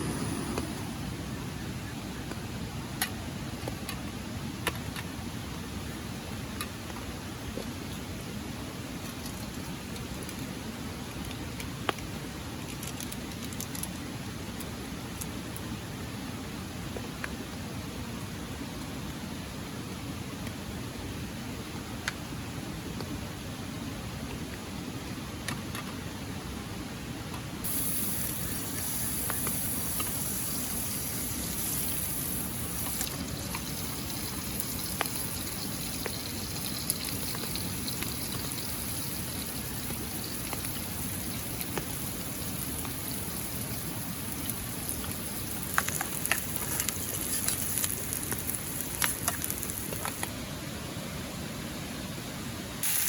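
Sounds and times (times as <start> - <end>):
high hiss: 0.0 - 1.6, 27.6 - 50.8, 52.8 - 53.0
light rain: 0.0 - 8.1, 27.6 - 51.9, 52.7 - 53.0.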